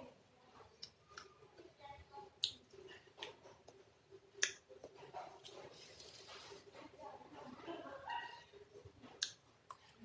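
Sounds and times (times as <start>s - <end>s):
mouth clicks and smacks while eating: 0.8s - 1.4s, 2.4s - 5.6s, 9.1s - 10.0s.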